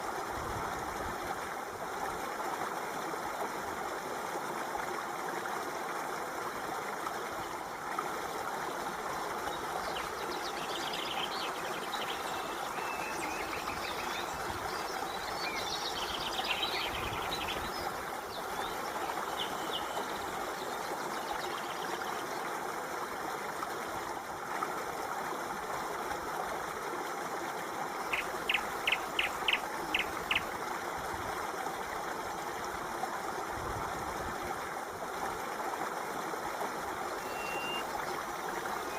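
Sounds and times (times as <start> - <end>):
stream flowing: 0.0 - 38.9
birds chirping: 9.8 - 22.2, 28.0 - 30.5, 37.2 - 38.0.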